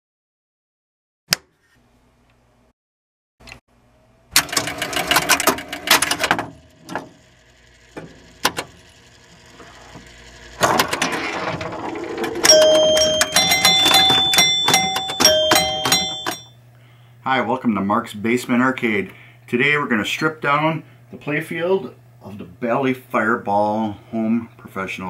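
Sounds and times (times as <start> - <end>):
pinball ball clattering: 10.6 - 16.5
bell-like scoring tones: 12.4 - 16.5.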